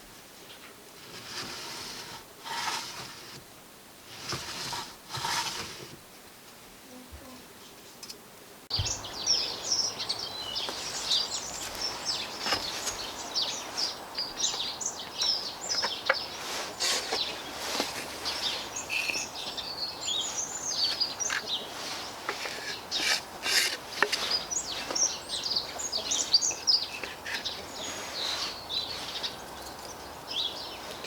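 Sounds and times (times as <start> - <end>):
small birds chirping: 7.6 - 31.0.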